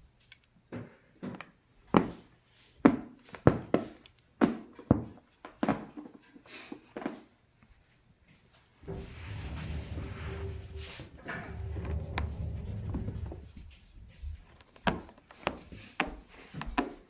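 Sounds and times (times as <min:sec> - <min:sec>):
low scraping rumble: 0:08.8 - 0:14.6.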